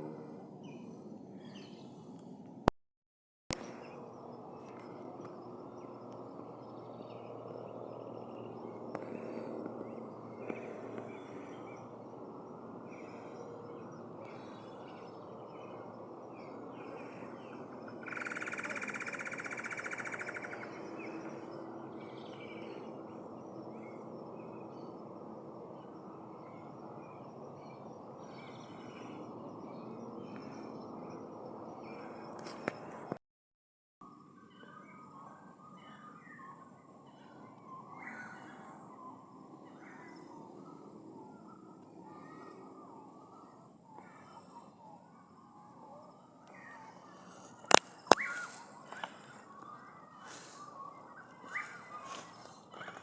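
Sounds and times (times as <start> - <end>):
short bird calls: 46.5 - 53.0.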